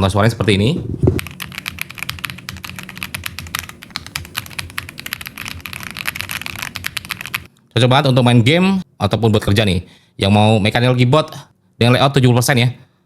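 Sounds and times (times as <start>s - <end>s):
mechanical keyboard typing: 1.2s - 7.5s.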